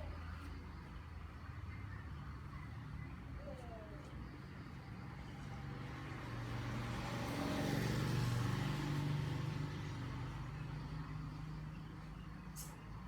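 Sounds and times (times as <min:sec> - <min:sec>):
vehicle passing by: 0:05.6 - 0:11.9.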